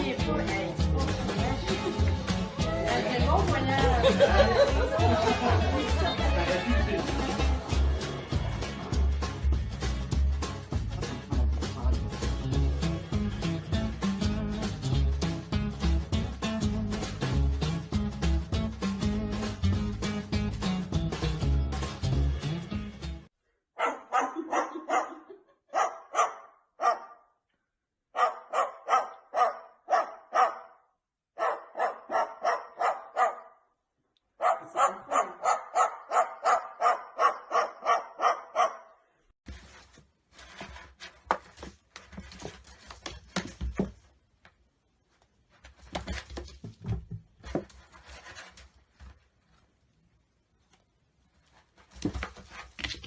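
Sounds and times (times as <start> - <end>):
knocks thumps and scuffling: 39.4 - 49.7, 51.4 - 53.0.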